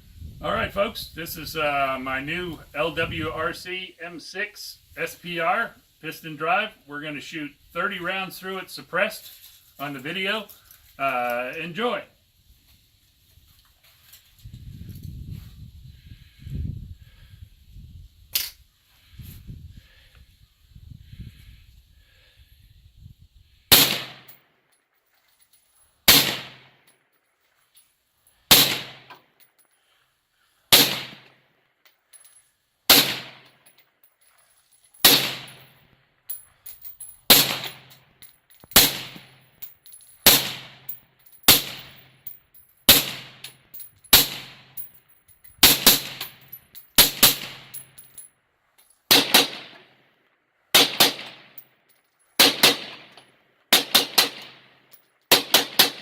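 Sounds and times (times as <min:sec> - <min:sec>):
suppressed rifle shots: 0:23.7 - 0:24.3, 0:26.1 - 0:26.7, 0:28.5 - 0:29.1, 0:30.7 - 0:31.3, 0:32.9 - 0:33.4, 0:35.0 - 0:35.6, 0:37.3 - 0:37.9, 0:49.1 - 0:49.8, 0:50.8 - 0:51.4, 0:52.4 - 0:53.1.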